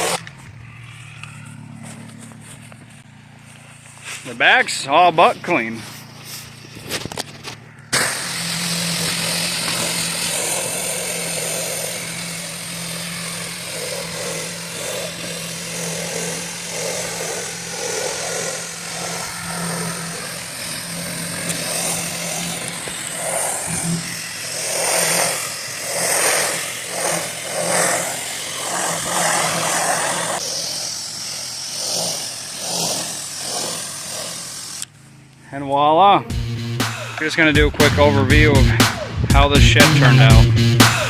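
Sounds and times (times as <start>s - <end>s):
pressure washer humming: 0.0s - 41.0s
water jet hissing on siding: 7.9s - 34.9s.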